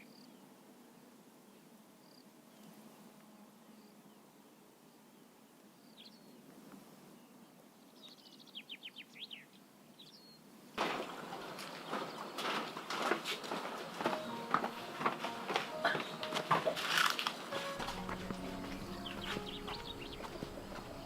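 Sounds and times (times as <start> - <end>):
loud rustling noise: 10.8 - 21.0
birds chirping and calling: 14.1 - 21.0.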